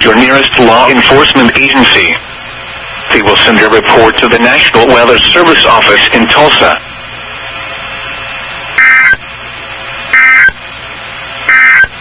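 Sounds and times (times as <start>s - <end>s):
buzzy digital data tones: 8.7s - 9.4s, 10.1s - 10.6s, 11.4s - 12.0s.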